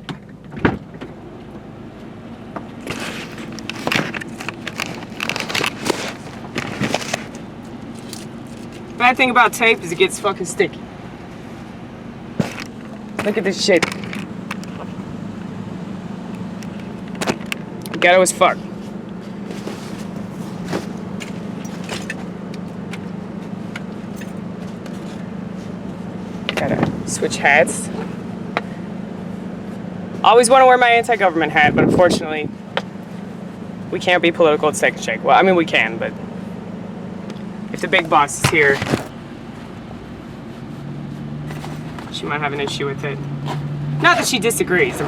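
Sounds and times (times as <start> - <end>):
car idling from inside: 0.0 - 30.3, 32.5 - 43.8
handling clicks and rustles: 2.5 - 10.6, 11.3 - 15.6, 16.2 - 28.7, 37.2 - 45.0
rustling and light clicks: 2.8 - 9.0.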